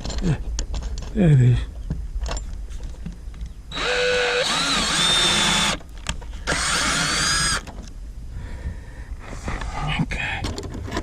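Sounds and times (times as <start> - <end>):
power drill whining: 3.7 - 5.8, 6.4 - 7.7.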